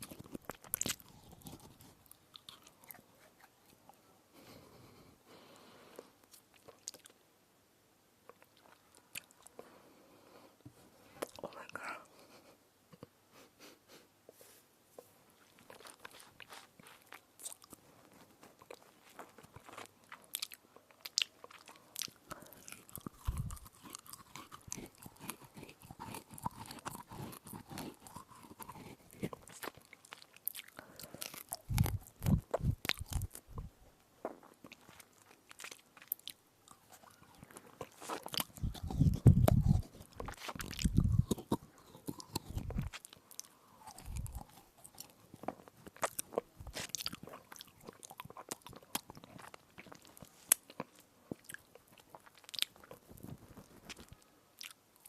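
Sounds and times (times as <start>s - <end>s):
crunchy chewing: 0.0s - 4.0s, 6.0s - 7.2s, 15.4s - 55.0s.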